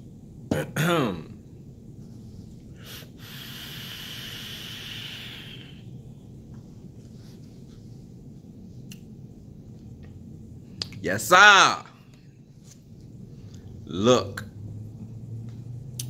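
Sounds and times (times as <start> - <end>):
airy hiss of vaping: 2.8 - 5.9.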